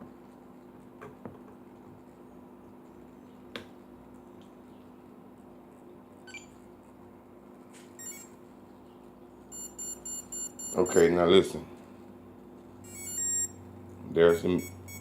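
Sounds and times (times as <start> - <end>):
faint steady hum: 0.0 - 15.0
short electronic chirps: 14.6 - 15.0.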